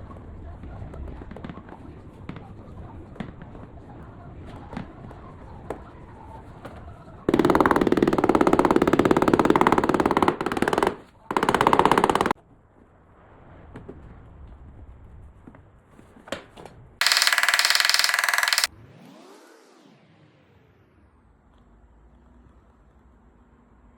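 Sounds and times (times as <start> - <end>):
rapid mechanical rattling: 7.3 - 12.4, 17.0 - 18.7.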